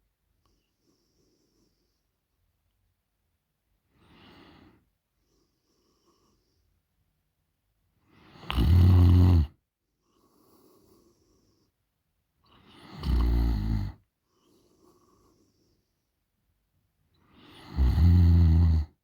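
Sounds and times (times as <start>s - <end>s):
woman snoring loudly: 8.4s - 9.5s, 12.7s - 14.0s, 17.5s - 18.9s.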